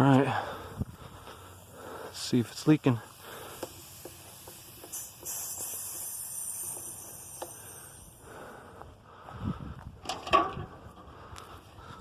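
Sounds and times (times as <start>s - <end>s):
spray hiss: 1.3s - 8.2s.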